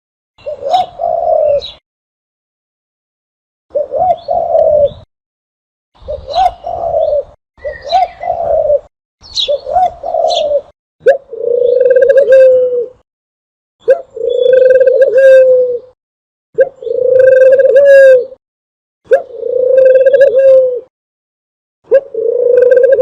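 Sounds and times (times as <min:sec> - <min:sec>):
dove cooing: 0:00.4 - 0:01.8, 0:03.7 - 0:05.1, 0:06.0 - 0:13.0, 0:13.8 - 0:16.0, 0:16.6 - 0:18.4, 0:19.1 - 0:20.9, 0:21.9 - 0:23.0.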